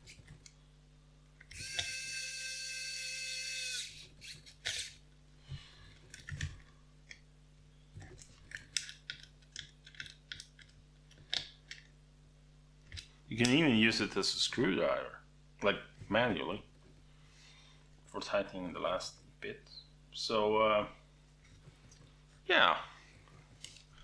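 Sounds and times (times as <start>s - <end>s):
electric screwdriver motor whirring: 1.5s - 5.0s
small clicks and taps: 8.0s - 11.9s.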